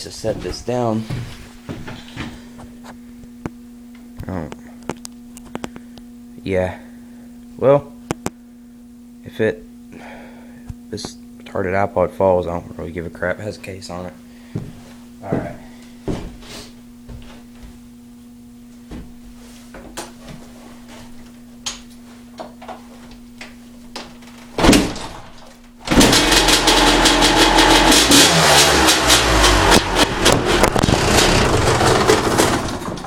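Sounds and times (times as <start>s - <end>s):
kick-start clicks and knocks: 25.8s - 33.0s
two-stroke engine revving: 25.9s - 33.0s.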